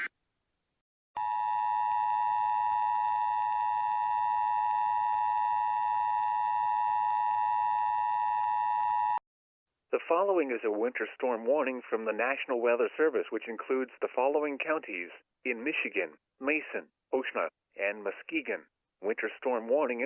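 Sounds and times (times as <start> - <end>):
two-tone electronic alarm: 1.2 - 9.2.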